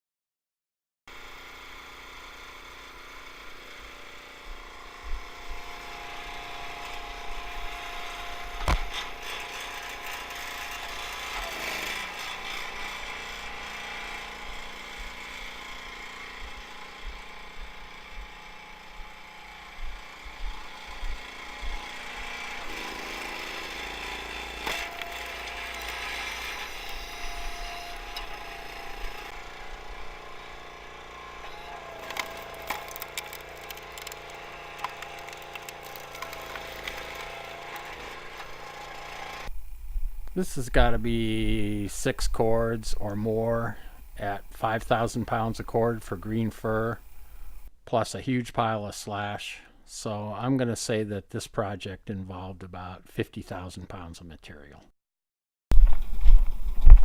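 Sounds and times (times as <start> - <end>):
small engine machine running: 1.1 - 39.8, 40.8 - 47.7
sharp wood cracks: 31.5 - 38.6.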